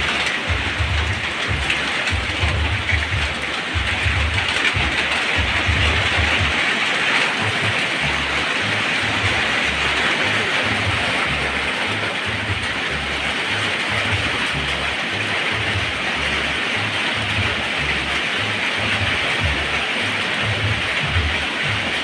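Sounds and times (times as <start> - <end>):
low rumble: 0.0 - 6.6
heavy rain hiss: 0.0 - 22.0.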